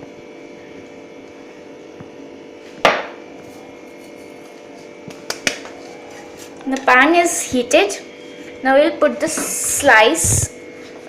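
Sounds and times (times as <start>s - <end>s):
electrical hum: 0.0s - 11.0s
hard object knock: 2.8s - 3.2s.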